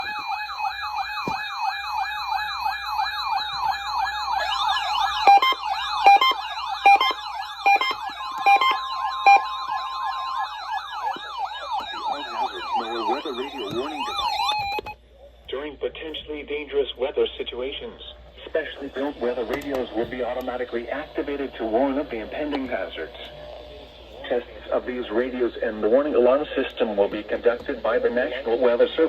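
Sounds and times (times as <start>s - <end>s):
electronic siren yelping: 0.0s - 15.0s
steady alarm tones: 0.0s - 29.0s.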